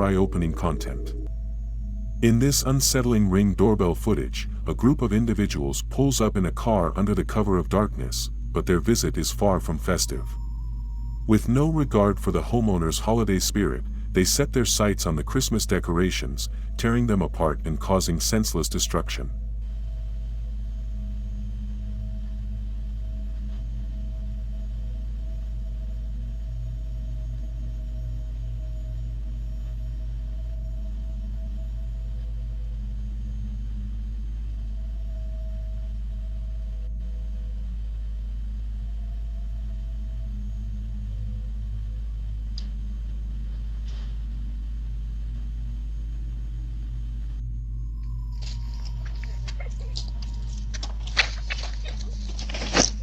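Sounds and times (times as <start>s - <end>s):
faint held higher tones: 0.0s - 18.6s, 44.3s - 53.0s
steady low drone: 0.0s - 53.0s.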